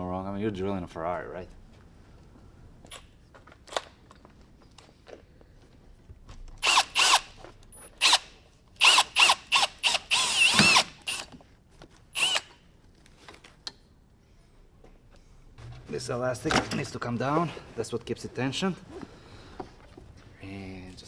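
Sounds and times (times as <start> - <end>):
power drill bursts: 6.6 - 11.3, 12.2 - 12.6.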